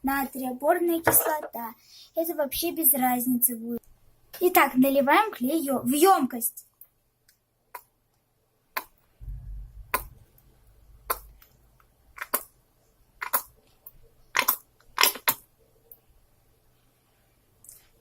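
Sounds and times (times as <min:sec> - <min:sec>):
brief low rumble: 0:09.2 - 0:11.0
glue bottle clicks and squelches: 0:11.0 - 0:12.5, 0:13.2 - 0:15.5.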